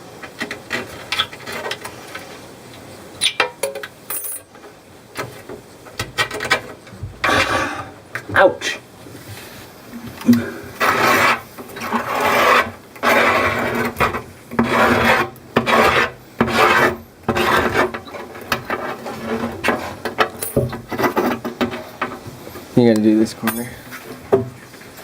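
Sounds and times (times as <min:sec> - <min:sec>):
hand tool rasping on metal: 0:10.8 - 0:22.0.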